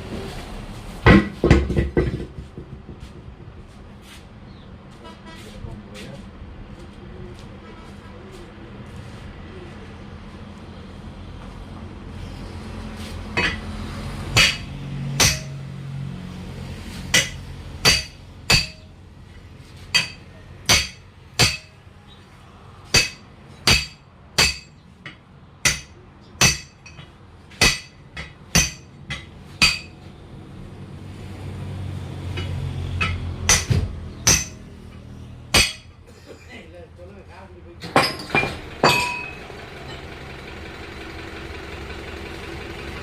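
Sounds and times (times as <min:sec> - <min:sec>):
hammer striking metal: 0:13.4 - 0:13.7, 0:14.4 - 0:15.7, 0:17.1 - 0:18.9, 0:19.9 - 0:21.8, 0:22.9 - 0:30.0, 0:32.4 - 0:34.8, 0:35.5 - 0:36.0, 0:38.0 - 0:39.4.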